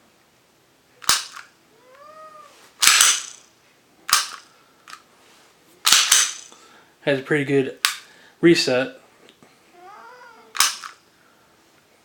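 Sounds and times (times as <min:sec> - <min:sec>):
pistol trigger dry-fire clicks: 0:04.1 - 0:04.4, 0:10.6 - 0:11.0.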